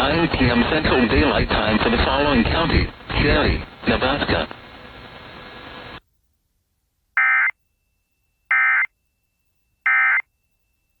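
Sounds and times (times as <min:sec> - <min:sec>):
radio hiss: 0:00.0 - 0:06.0.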